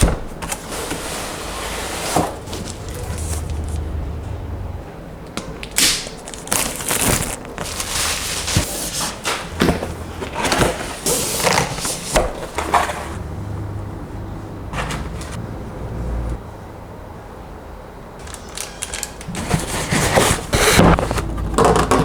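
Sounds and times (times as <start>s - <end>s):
packaging rustling and scraping: 0.0s - 4.1s, 5.6s - 13.2s, 14.8s - 15.4s, 18.2s - 22.0s.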